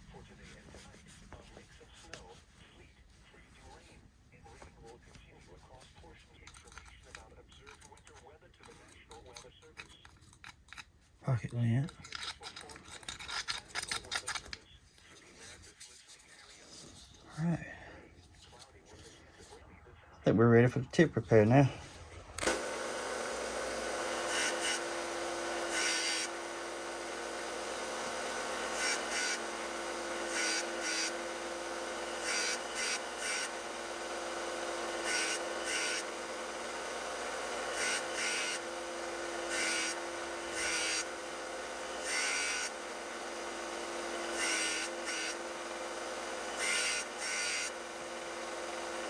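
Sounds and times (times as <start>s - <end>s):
power sander running: 22.4s - 49.0s
metal blade rasping on abrasive: 23.2s - 49.0s.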